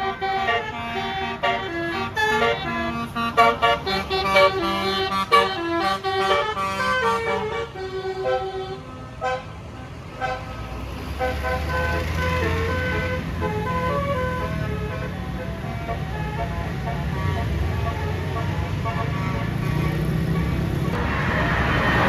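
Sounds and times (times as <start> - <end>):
bus horn playing a tune: 0.0 - 10.6, 11.2 - 22.0
deep engine rumble: 20.3 - 22.0.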